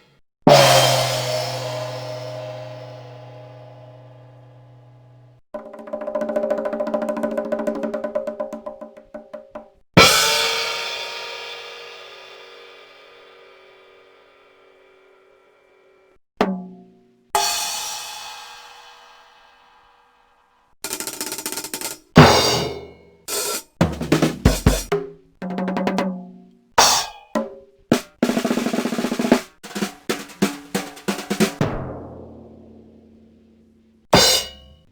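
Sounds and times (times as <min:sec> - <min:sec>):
fast drum roll: 0:05.6 - 0:10.5, 0:20.8 - 0:26.3, 0:27.9 - 0:33.1.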